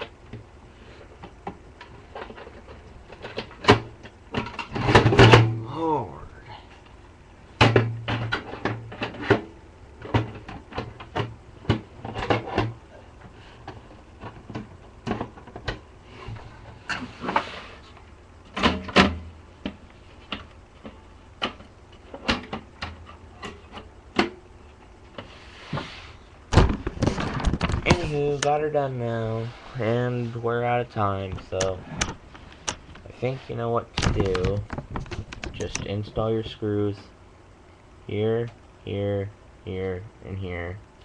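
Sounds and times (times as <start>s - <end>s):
computer parts clicking and knocking: 26.5s - 28.0s, 33.9s - 36.0s.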